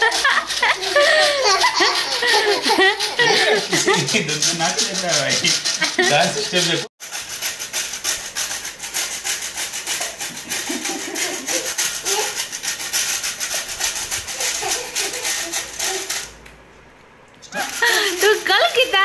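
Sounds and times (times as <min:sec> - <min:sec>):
scratchy rapid rasping noise: 0:00.0 - 0:16.4, 0:17.5 - 0:19.0.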